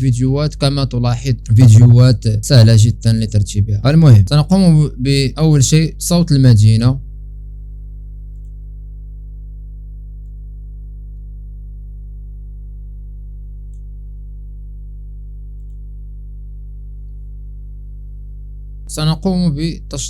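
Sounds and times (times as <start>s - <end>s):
low synthesizer drone: 0.0s - 20.0s
faint clicks: 8.3s - 8.6s, 15.6s - 15.8s.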